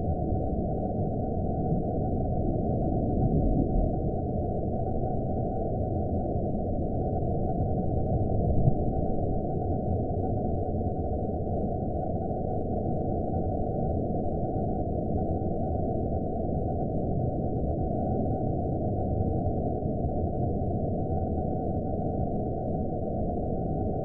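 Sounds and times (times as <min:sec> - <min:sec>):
low muffled noise drone: 0:00.0 - 0:11.0.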